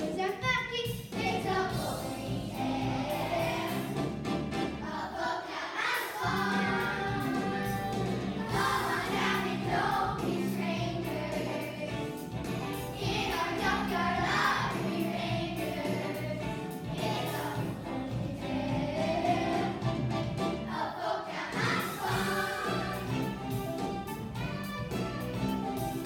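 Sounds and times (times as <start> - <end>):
instrumental accompaniment: 1.0 - 5.1, 6.2 - 20.8, 21.4 - 26.0
children singing in chorus: 4.8 - 12.0, 20.7 - 23.4.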